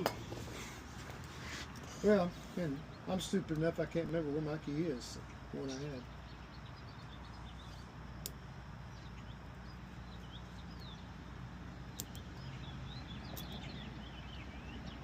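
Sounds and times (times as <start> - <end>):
birds chirping faintly: 0.0 - 15.0
low background hum: 0.0 - 15.0
sharp clicks: 8.2 - 8.4, 11.9 - 12.5, 13.3 - 13.6.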